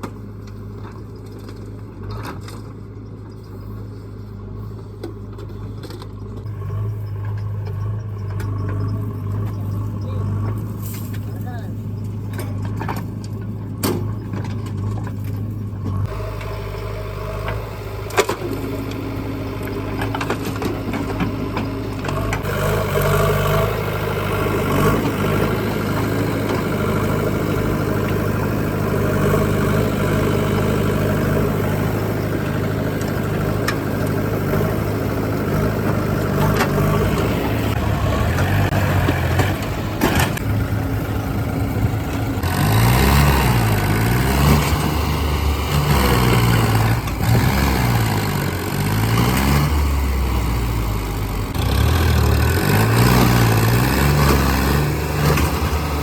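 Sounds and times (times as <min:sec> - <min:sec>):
heavy machine engine running: 0:00.0 - 0:56.0.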